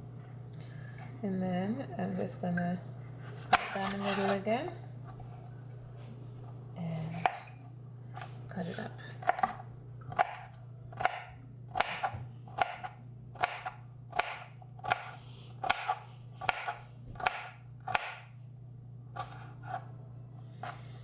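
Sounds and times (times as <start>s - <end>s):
knife chopping on cutting board: 9.2s - 18.3s.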